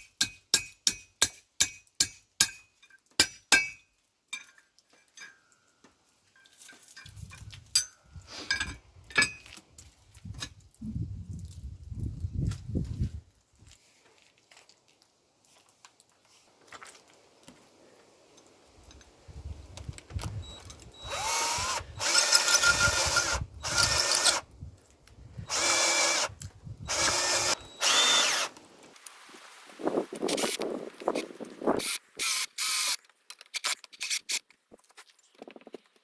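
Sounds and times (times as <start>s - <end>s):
power drill motor whine: 20.4s - 24.5s, 25.4s - 28.6s.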